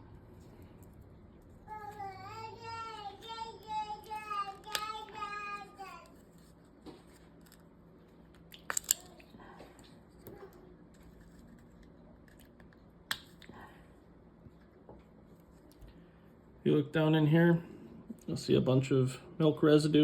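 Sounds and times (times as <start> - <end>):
child singing: 1.7 - 6.1
plastic parts handled: 6.4 - 13.4.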